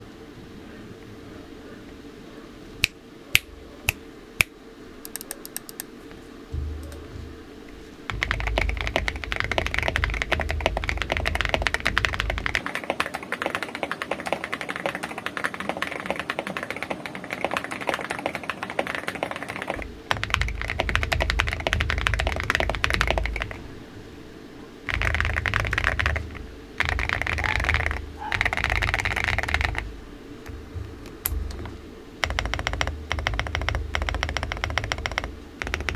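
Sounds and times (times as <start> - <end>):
mechanical keyboard typing: 5.1 - 5.9, 8.1 - 23.6, 24.9 - 29.8, 32.2 - 35.9.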